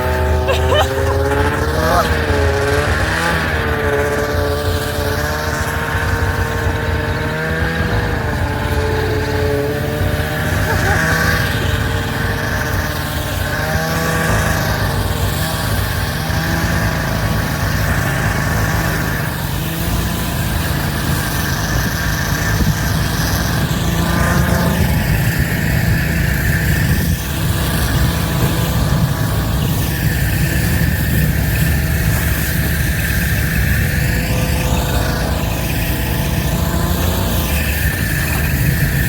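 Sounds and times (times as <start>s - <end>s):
snowmobile engine running: 0.0s - 39.0s
wind rumble on microphone: 0.0s - 39.0s.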